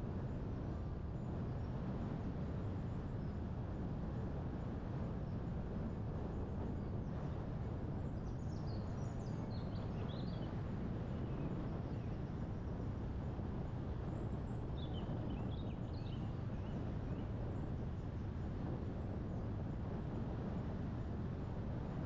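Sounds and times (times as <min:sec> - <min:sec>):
low wind noise: 0:00.0 - 0:22.0.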